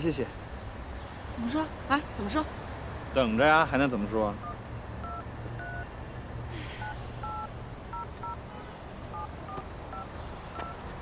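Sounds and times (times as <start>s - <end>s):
phone keypad beeps: 4.4s - 5.9s, 7.2s - 8.4s, 9.1s - 10.8s.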